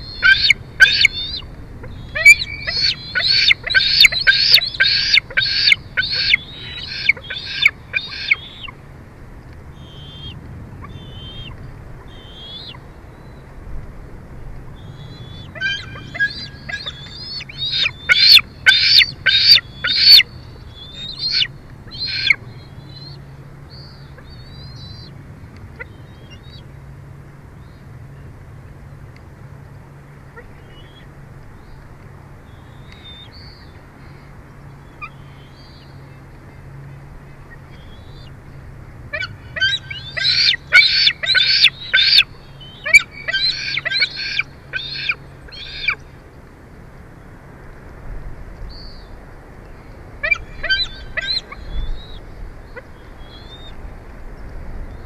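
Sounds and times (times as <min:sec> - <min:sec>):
eagle piping chitter calls: 0:00.0 - 0:08.8, 0:09.7 - 0:13.4, 0:14.8 - 0:25.1, 0:39.1 - 0:46.1, 0:50.2 - 0:53.8.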